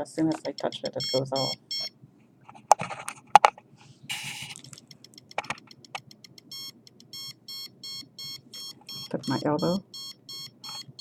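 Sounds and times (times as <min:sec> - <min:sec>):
rapid short alarm beeps: 0:00.6 - 0:01.9, 0:04.1 - 0:04.6, 0:06.5 - 0:10.9
knocks of device handling: 0:02.5 - 0:03.6, 0:05.4 - 0:05.7.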